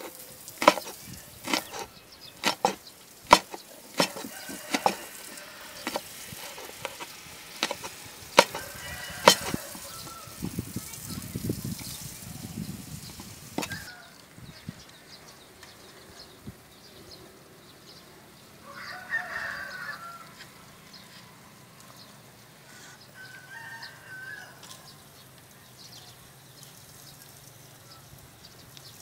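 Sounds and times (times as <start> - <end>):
rooster crowing: 4.0 - 7.0, 7.6 - 10.5, 13.6 - 14.2, 18.6 - 20.7, 23.1 - 25.0.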